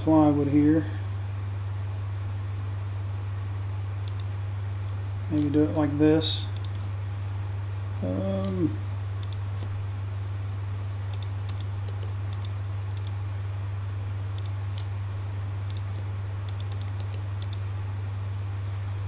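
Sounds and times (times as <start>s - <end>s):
low electrical hum: 0.0s - 19.0s
mouse and keyboard clicks: 4.0s - 4.3s, 6.6s - 6.9s, 9.2s - 9.7s, 11.1s - 13.2s, 14.4s - 14.9s, 15.7s - 17.6s.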